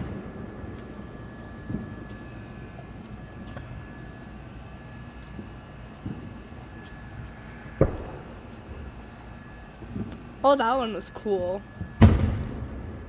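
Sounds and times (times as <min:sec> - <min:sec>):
distant fireworks booming: 0:00.0 - 0:10.4, 0:11.8 - 0:13.0
sharp loud bang: 0:12.0 - 0:13.0.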